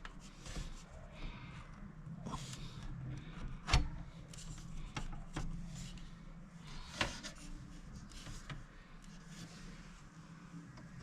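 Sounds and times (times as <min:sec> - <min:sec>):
low steady hum: 0:00.0 - 0:11.0.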